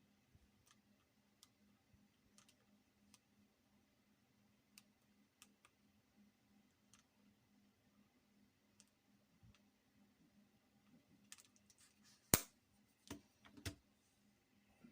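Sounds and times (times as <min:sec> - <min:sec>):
low steady hum: 0:00.0 - 0:14.9.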